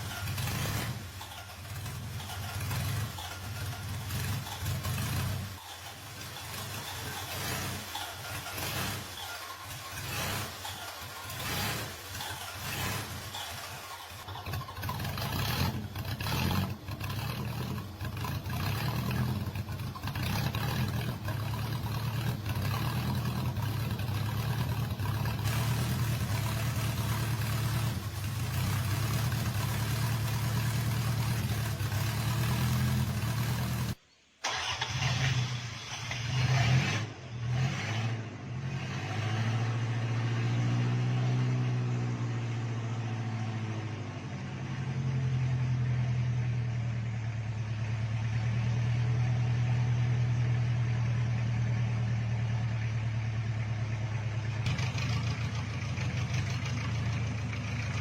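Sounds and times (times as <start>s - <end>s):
car engine idling: 0.0s - 35.6s, 40.9s - 58.0s.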